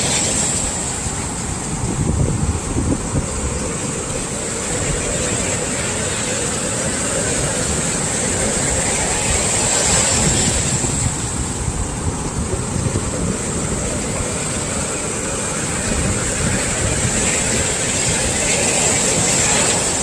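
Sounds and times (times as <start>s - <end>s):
waves breaking on shore: 0.0s - 20.0s.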